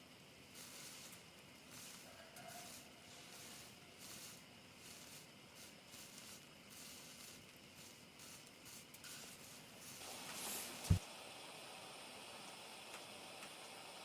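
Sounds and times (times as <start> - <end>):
wood fire crackling: 0.4 - 11.0.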